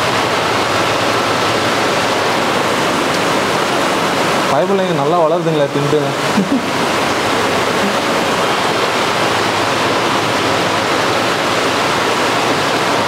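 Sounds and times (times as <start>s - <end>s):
running water splashing: 0.0s - 13.0s.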